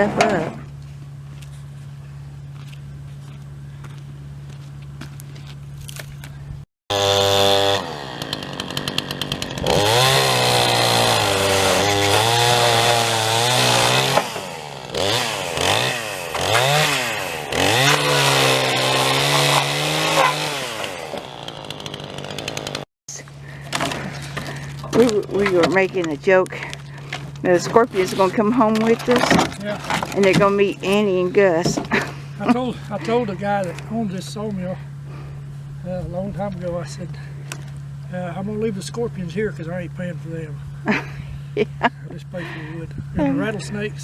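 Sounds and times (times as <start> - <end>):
steady low hum: 0.0 - 6.6, 23.2 - 44.0
chainsaw cutting wood: 6.9 - 33.9.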